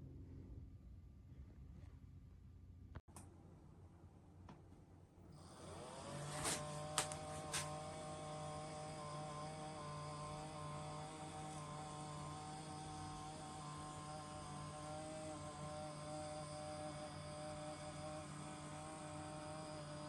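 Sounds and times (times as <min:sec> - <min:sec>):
desk lift motors humming: 0:05.4 - 0:20.0.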